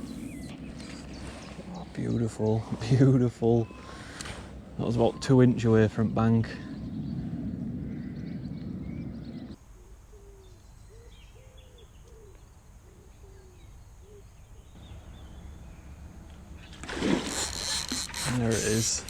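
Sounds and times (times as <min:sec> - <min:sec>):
low rumble: 0:05.6 - 0:09.6.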